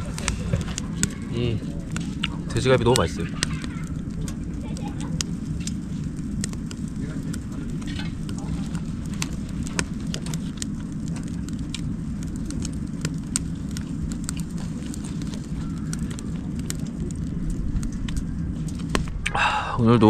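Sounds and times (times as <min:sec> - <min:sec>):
fire low rumble: 0:00.0 - 0:20.0
firewood crackling and popping: 0:00.0 - 0:20.0.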